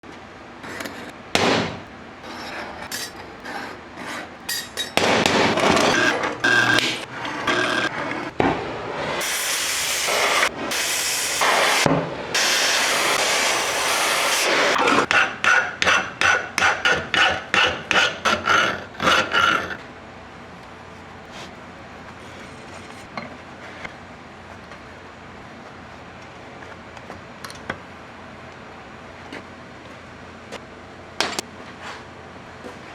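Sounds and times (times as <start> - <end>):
tool scraping steel: 2.2 - 8.4, 9.2 - 19.8.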